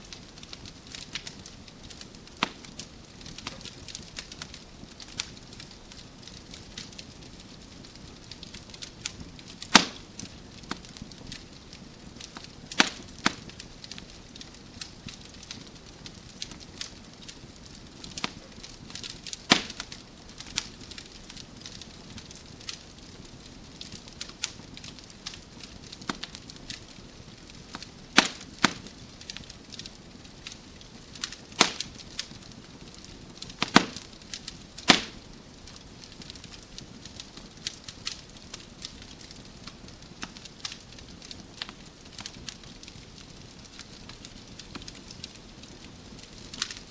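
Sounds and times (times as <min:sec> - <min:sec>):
low fire hiss: 0:00.0 - 0:46.9
wood fire crackling: 0:00.0 - 0:46.9
logs popping and snapping: 0:00.3 - 0:07.0, 0:07.9 - 0:10.9, 0:11.6 - 0:15.6, 0:16.4 - 0:21.8, 0:26.0 - 0:26.8, 0:27.4 - 0:36.6.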